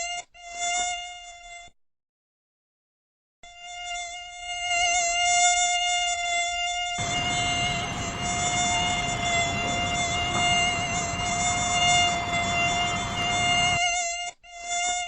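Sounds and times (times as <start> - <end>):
steady hiss: 7.0 - 13.8
mosquito whining: 7.0 - 13.9.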